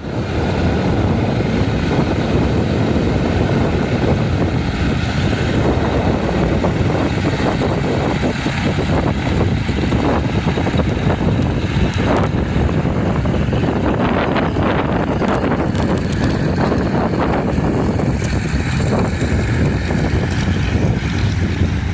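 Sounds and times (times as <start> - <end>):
propeller aircraft engine running: 0.0 - 21.9.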